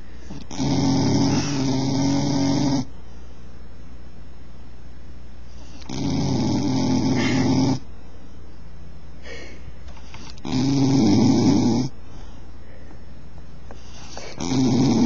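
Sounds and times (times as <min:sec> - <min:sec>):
dog snoring: 0:00.2 - 0:02.9, 0:05.5 - 0:07.9, 0:10.1 - 0:12.0, 0:13.7 - 0:15.0.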